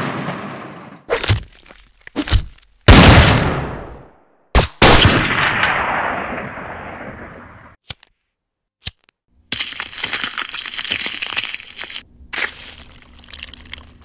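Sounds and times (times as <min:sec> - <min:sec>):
gunshots with long echo: 0:02.9 - 0:07.8.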